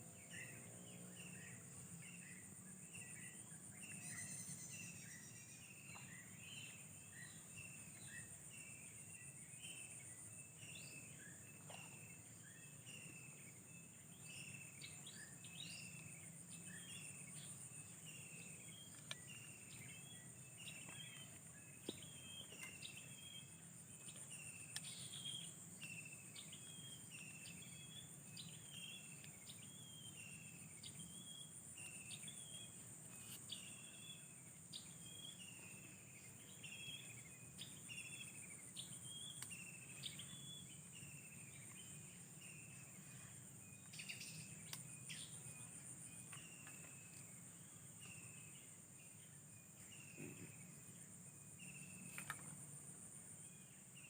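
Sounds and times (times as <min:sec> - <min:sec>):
bird chirps: 0:00.2 - 0:54.0
high insect drone: 0:12.3 - 0:54.0.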